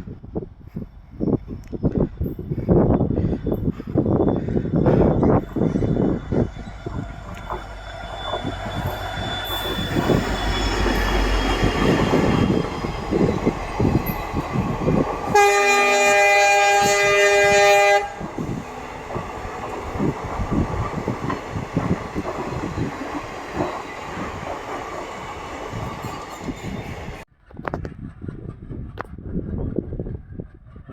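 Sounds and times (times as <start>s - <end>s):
train wheels clattering: 2.6s - 27.2s
train horn: 15.3s - 18.4s.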